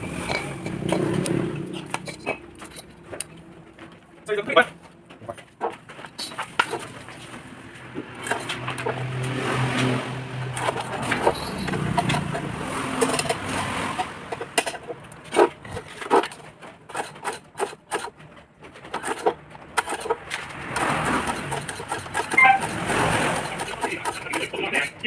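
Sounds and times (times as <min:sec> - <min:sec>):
clicks and knocks of hand work: 0:00.0 - 0:25.0.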